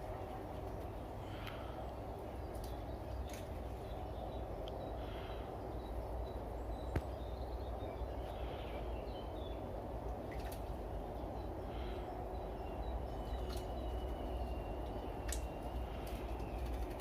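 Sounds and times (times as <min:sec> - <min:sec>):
low background hum: 0:00.0 - 0:17.0
faint high bird chirps: 0:11.8 - 0:17.0.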